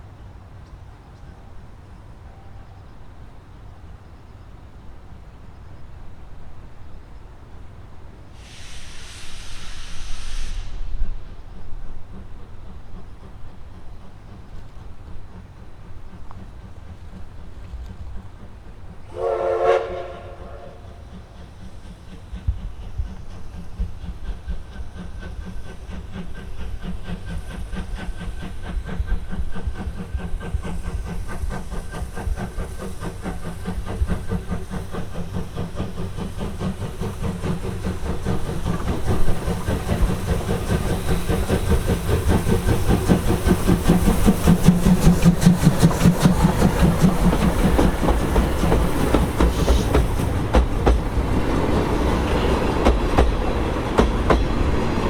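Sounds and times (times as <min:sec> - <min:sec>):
steam locomotive chuffing: 0:07.8 - 0:55.0
steam hissing: 0:08.2 - 0:55.0
steam locomotive whistle: 0:19.1 - 0:21.1
wheels clicking over rail joints: 0:21.2 - 0:55.0.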